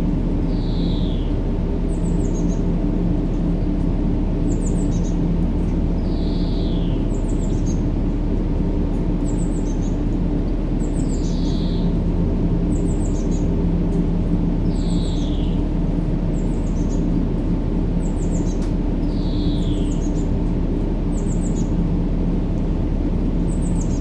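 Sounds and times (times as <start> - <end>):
low rumbling noise: 22.6 - 24.0.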